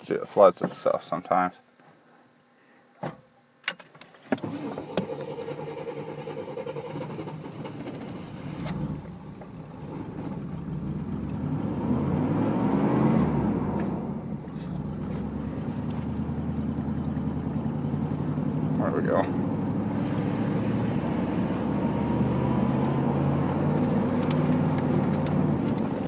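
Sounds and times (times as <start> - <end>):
pickup truck engine starting and revving: 4.4 - 26.0.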